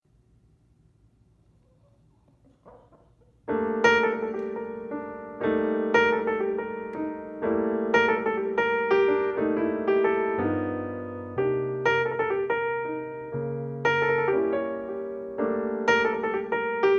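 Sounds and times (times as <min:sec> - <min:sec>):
piano music: 0:03.4 - 0:16.9.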